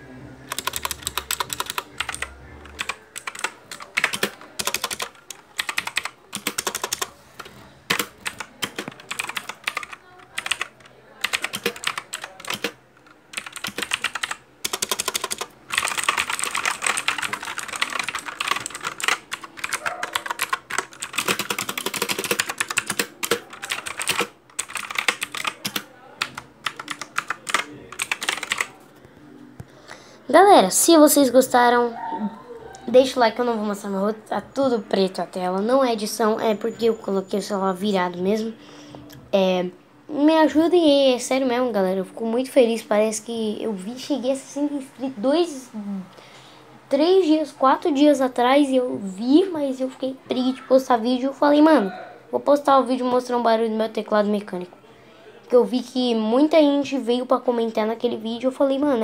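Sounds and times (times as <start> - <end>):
mechanical keyboard typing: 0.5 - 28.8.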